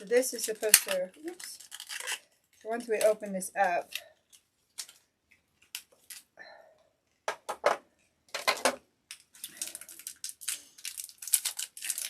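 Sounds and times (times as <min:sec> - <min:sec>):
plastic packaging crinkling: 0:00.0 - 0:06.4, 0:08.4 - 0:12.0
plastic packaging clicks and snaps: 0:00.4 - 0:03.1, 0:03.9 - 0:05.0, 0:05.6 - 0:06.3, 0:08.4 - 0:12.0.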